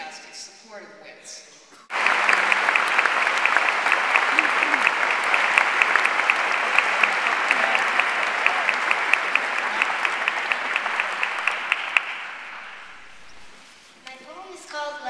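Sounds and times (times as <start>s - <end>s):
hands clapping close by: 1.9s - 13.4s
audience applauding: 1.9s - 13.6s.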